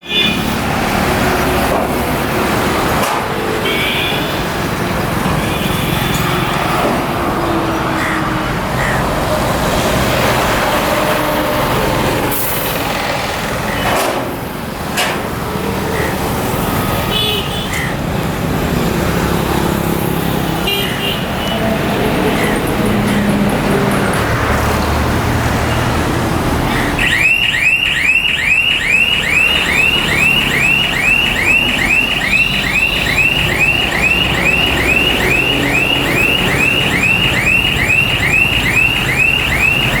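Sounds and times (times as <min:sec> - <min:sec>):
vehicle engines in traffic: 0:00.0 - 0:40.0
heavy truck: 0:00.1 - 0:40.0.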